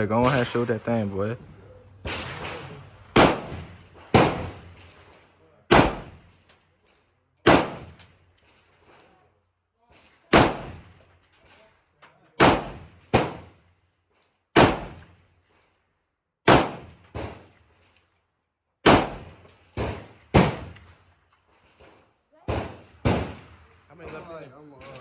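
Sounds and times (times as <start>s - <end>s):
gunshots: 0.0s - 6.4s, 7.4s - 8.0s, 10.3s - 11.0s, 12.4s - 13.6s, 14.6s - 15.2s, 16.5s - 17.5s, 18.8s - 20.9s, 22.4s - 25.0s.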